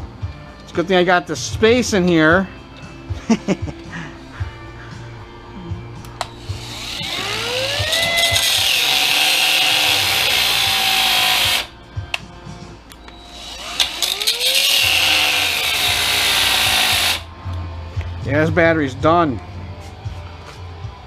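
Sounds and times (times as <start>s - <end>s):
cutoff wheel grinding metal: 6.2s - 11.7s, 13.1s - 17.3s.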